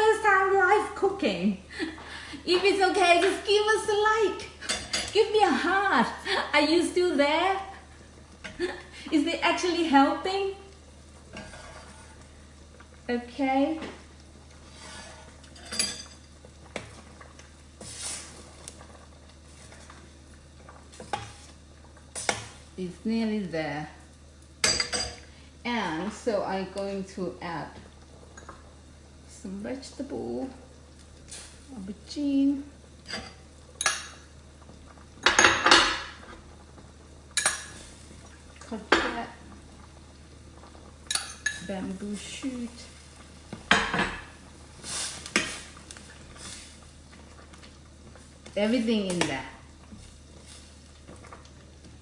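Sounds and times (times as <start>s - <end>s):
utensil scraping stir: 11.3s - 12.3s, 14.5s - 15.9s, 17.8s - 22.7s, 44.8s - 48.6s, 49.8s - 51.5s
metal utensil clinking on pot: 24.6s - 25.2s, 41.1s - 41.7s.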